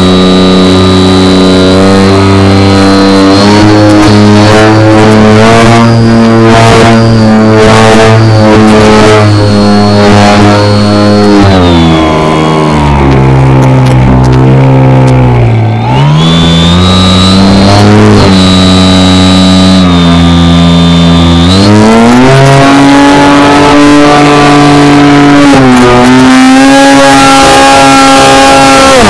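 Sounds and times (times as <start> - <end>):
model plane motor and propeller: 0.0 - 29.0.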